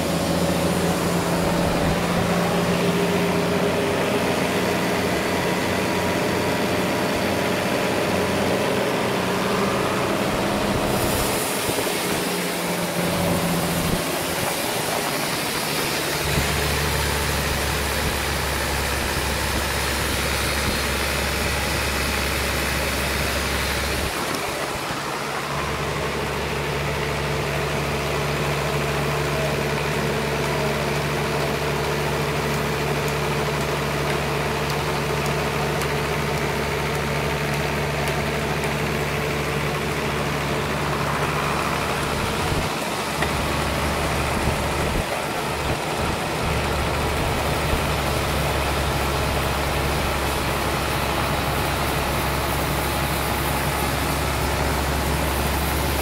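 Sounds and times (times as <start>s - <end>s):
sawmill engine humming: 0.0s - 56.0s.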